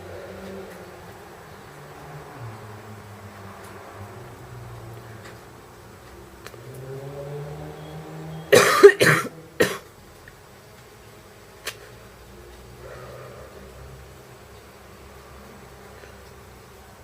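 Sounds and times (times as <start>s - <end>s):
woman coughing: 8.5s - 9.8s.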